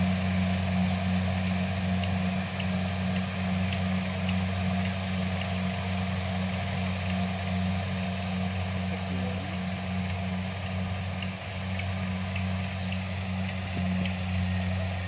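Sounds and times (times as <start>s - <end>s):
combine harvester engine droning: 0.0s - 15.0s
faint ticks: 1.4s - 5.6s, 10.0s - 14.7s.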